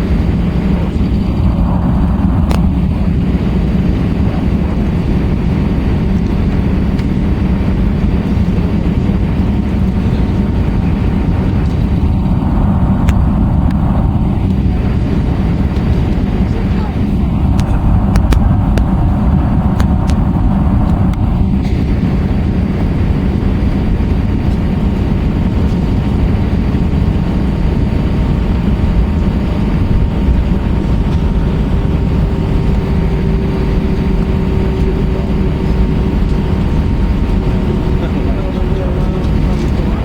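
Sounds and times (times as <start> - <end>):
jet engine roar in cabin: 0.0 - 40.0
lower whine: 0.0 - 40.0.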